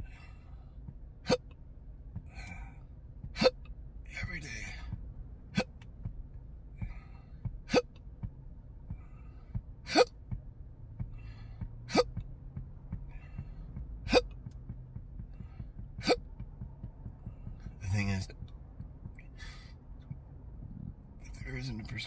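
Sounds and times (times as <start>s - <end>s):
man hiccuping: 1.2s - 1.5s, 3.3s - 3.7s, 5.5s - 5.8s, 7.7s - 8.0s, 9.9s - 10.2s, 11.9s - 12.2s, 14.0s - 14.4s, 16.0s - 16.3s.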